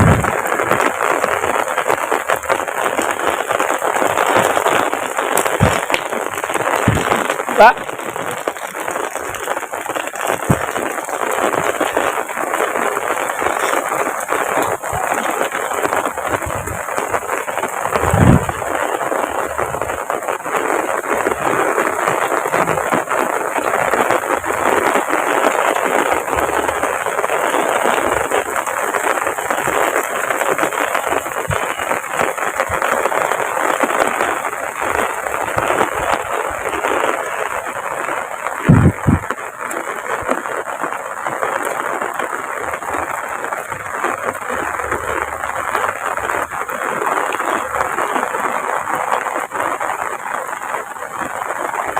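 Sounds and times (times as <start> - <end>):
heavy rain pouring: 0.0 - 51.9
low thump: 38.7 - 39.2.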